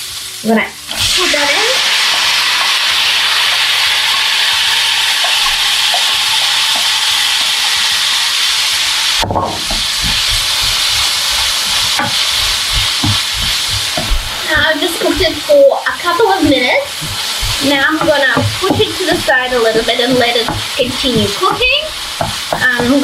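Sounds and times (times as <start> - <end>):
vegetables sizzling in a frying pan: 0.0 - 23.0
utensil knocking in a pan: 9.2 - 23.0.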